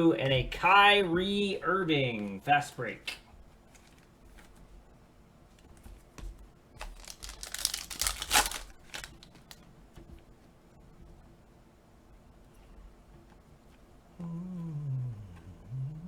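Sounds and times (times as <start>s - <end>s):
handling rustles and clicks: 3.6s - 4.7s, 5.5s - 10.2s
foil wrapper crinkling and tearing: 6.8s - 9.6s.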